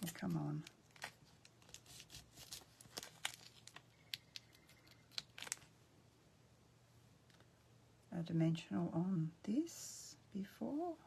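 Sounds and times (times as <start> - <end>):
paper crinkling and clicks: 0.0 - 5.7.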